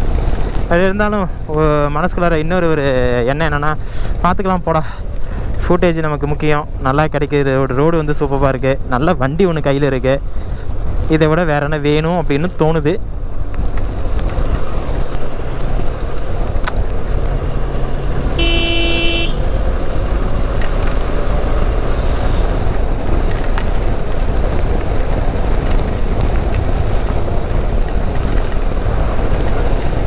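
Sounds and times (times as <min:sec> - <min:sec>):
wind and road noise: 0:00.0 - 0:30.0
motorcycle engine running: 0:14.2 - 0:30.0
vehicle horn toot: 0:18.4 - 0:19.5, 0:21.9 - 0:22.6.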